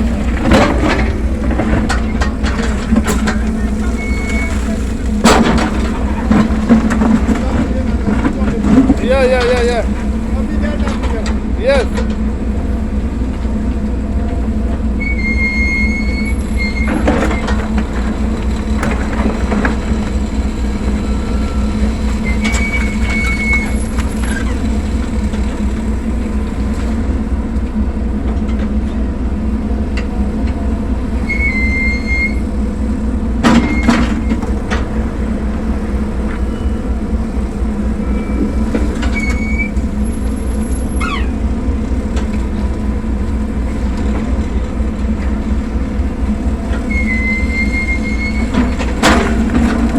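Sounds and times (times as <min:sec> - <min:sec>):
backhoe engine running: 0:00.0 - 0:49.9
short high squeals: 0:03.6 - 0:04.8, 0:15.0 - 0:17.6, 0:20.9 - 0:24.8, 0:31.2 - 0:32.5, 0:38.0 - 0:39.9, 0:40.6 - 0:41.5, 0:46.8 - 0:48.8.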